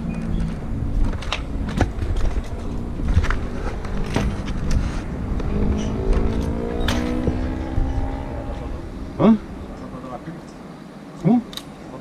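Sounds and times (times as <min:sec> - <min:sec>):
wind rumbling on microphone: 0:00.0 - 0:10.4
street traffic: 0:00.0 - 0:12.0.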